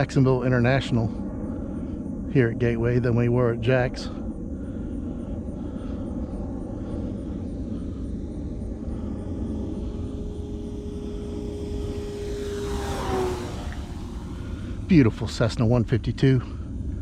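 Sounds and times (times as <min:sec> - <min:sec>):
distant jet rumble: 0:00.0 - 0:17.0
model plane electric motor hum: 0:07.0 - 0:15.8.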